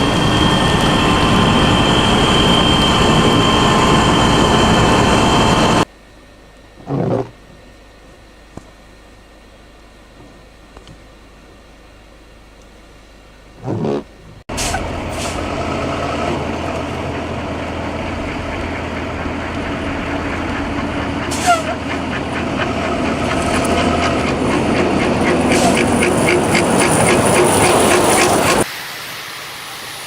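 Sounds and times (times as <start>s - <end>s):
vehicle engine running: 13.5s - 28.7s.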